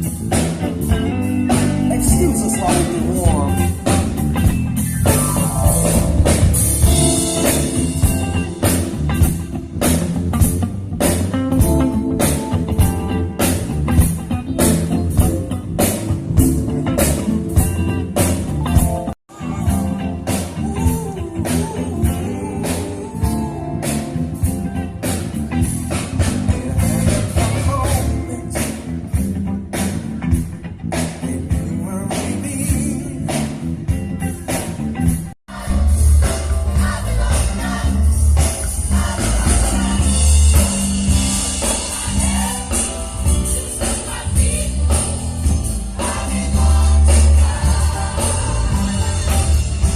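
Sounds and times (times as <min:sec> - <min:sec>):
live rock blues band: 0:00.0 - 0:49.9
person singing: 0:01.8 - 0:03.9, 0:19.3 - 0:24.1.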